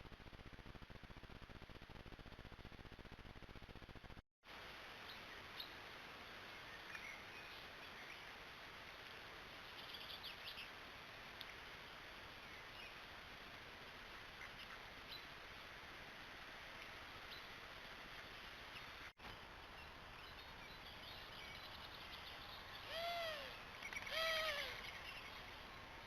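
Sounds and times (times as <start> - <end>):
steady background hiss: 4.5 - 26.0
faint bird chirps: 5.0 - 9.0, 9.6 - 10.8, 14.1 - 15.3, 18.2 - 25.9.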